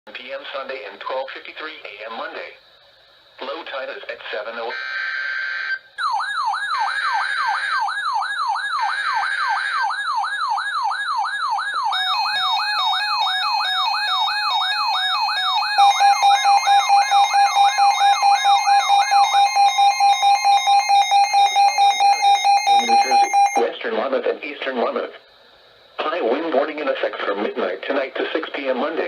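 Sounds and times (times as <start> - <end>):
falling wail siren: 4.8 - 23.6
pulsing alert tone: 11.9 - 23.6
buzzy data bursts: 12.0 - 23.7.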